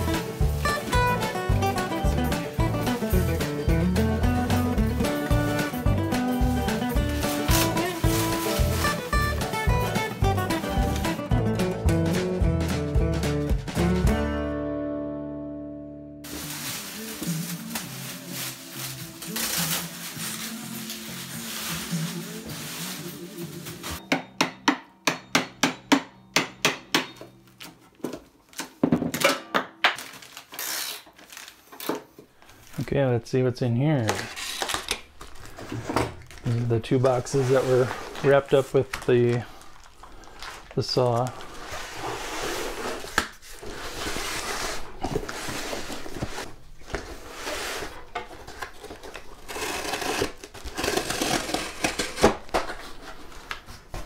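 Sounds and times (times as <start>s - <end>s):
cardboard and packing rustling: 5.2s - 11.2s, 16.2s - 24.0s, 30.0s - 32.9s, 33.9s - 54.0s.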